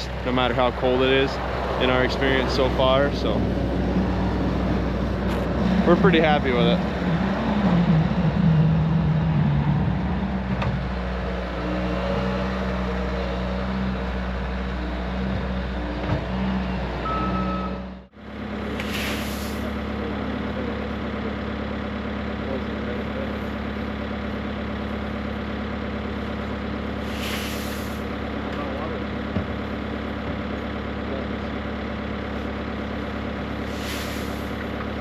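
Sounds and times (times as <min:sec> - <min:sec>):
diesel engine running: 0:00.0 - 0:35.0
short hiss: 0:18.8 - 0:19.6, 0:27.1 - 0:28.0, 0:33.7 - 0:34.5.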